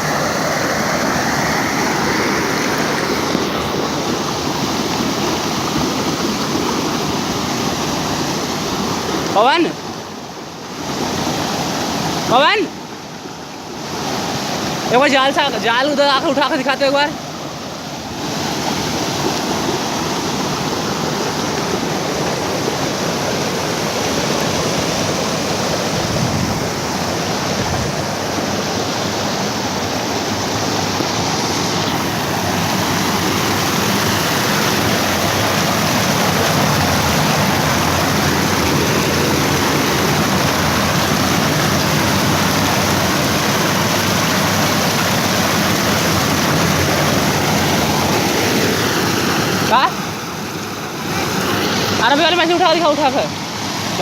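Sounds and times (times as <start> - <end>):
flowing water rushing: 0.0 - 54.0.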